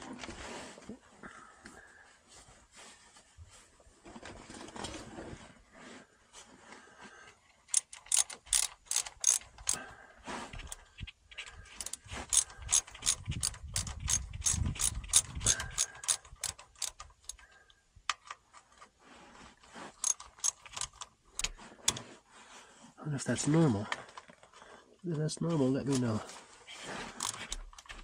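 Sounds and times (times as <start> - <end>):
hand ratchet wrench clicking: 7.7 - 9.8, 10.6 - 10.9, 11.7 - 17.4, 20.0 - 22.0, 27.2 - 28.0.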